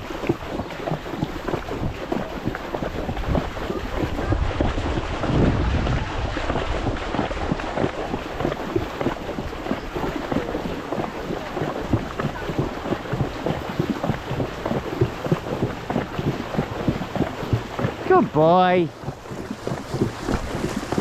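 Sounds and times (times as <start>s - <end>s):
water splashing around horse legs: 0.0s - 21.0s
wind rumbling on microphone: 0.0s - 21.0s.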